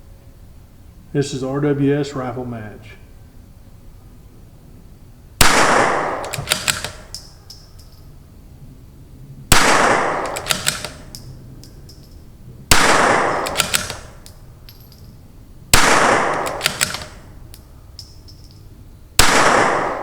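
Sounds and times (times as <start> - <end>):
rifle shots ringing: 5.4 - 8.0, 9.5 - 20.0
rifle bolt clicks: 6.1 - 8.0, 10.2 - 12.2, 13.3 - 15.0, 15.8 - 18.6.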